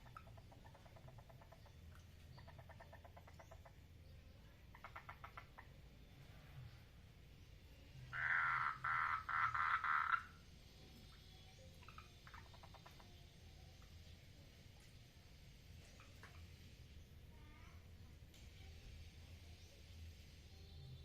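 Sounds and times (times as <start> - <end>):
frogs trilling: 8.1 - 10.4
loud pulsed frog call: 8.1 - 10.4.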